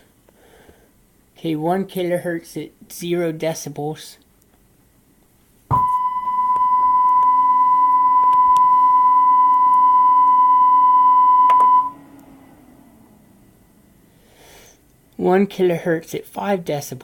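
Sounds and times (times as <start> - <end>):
sine test tone: 5.7 - 12.2.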